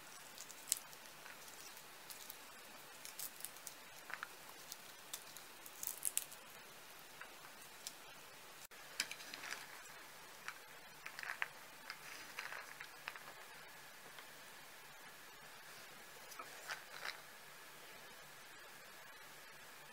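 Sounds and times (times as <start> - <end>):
acorns being eaten crunchy clicks: 0.1 - 6.6.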